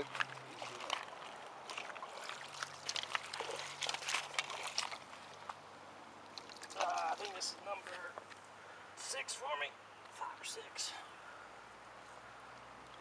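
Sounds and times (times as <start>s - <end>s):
splashes in shallow water: 0.0s - 5.6s, 6.3s - 7.5s.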